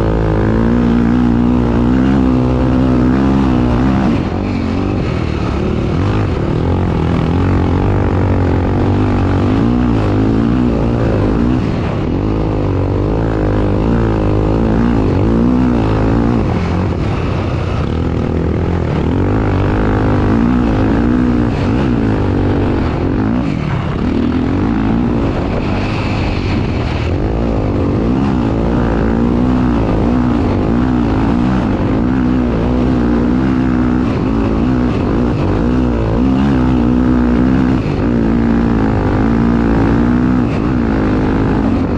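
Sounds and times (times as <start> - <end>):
racing engine revving: 0.0 - 41.9.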